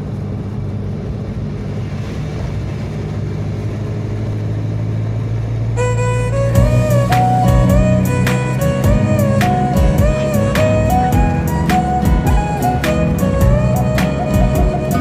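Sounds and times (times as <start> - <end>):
music with plucked guitar: 5.8 - 15.0.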